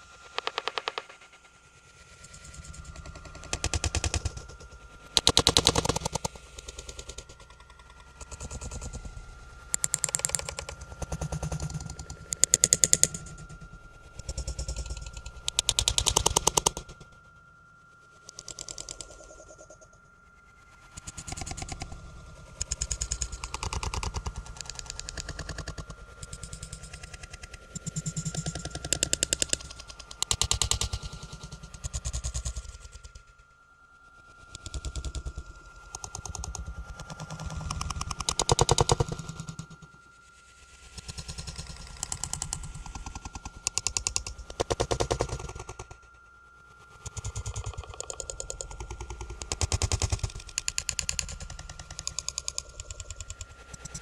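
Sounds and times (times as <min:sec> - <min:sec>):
faint steady high tone: 0:00.0 - 0:54.0.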